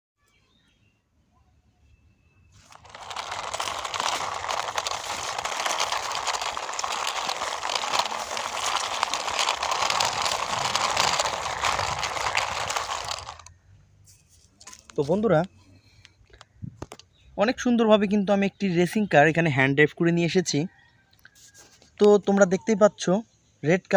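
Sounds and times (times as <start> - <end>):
toy car wheels rolling on gritty ground: 2.6 - 13.6.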